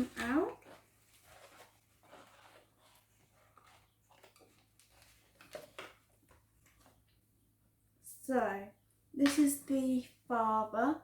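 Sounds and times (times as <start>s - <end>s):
packaging rustling and clicking: 0.0s - 7.0s.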